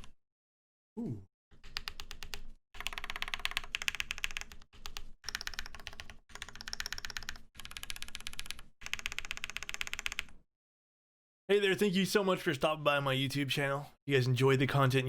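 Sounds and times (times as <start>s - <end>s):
fast typing on mechanical keyboard: 1.7s - 10.4s.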